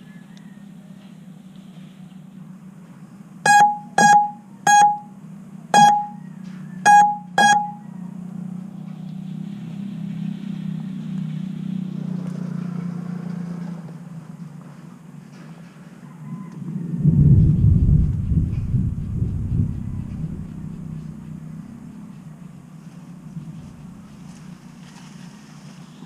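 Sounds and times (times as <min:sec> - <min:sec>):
short electronic beeps: 0:03.5 - 0:05.1, 0:05.8 - 0:06.2, 0:06.8 - 0:07.8
rushing noise: 0:16.8 - 0:21.8
steady low hum: 0:16.8 - 0:24.8.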